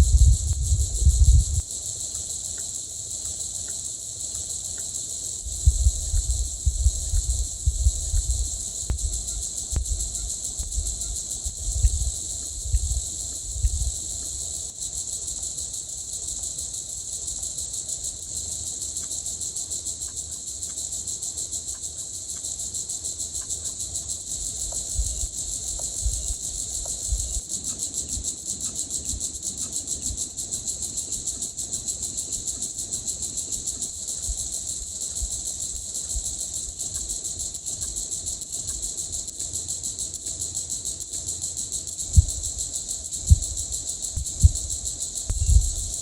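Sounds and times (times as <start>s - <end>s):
dull low thuds: 0.0s - 1.6s, 5.5s - 14.0s, 42.1s - 42.6s, 43.2s - 46.0s
insect chorus buzzing: 0.0s - 46.0s.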